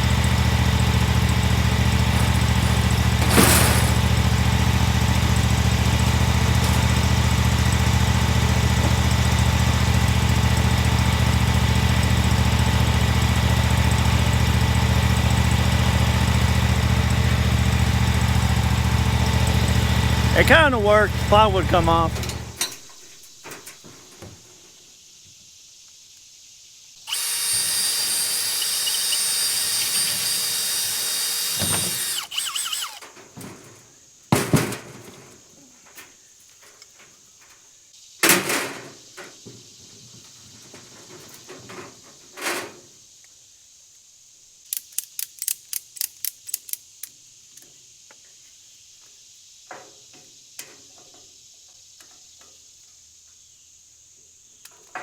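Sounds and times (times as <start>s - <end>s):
power drill running: 0.0s - 22.4s, 27.1s - 33.1s.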